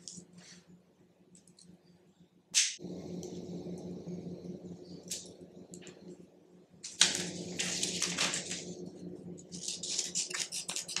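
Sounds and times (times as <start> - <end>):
steady low hum: 0.0 - 11.0
sharp snap: 2.6 - 2.8.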